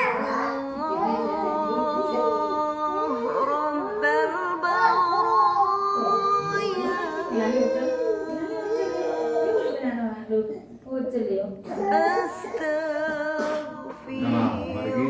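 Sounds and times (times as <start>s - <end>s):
person singing in a high voice: 12.5s - 15.0s.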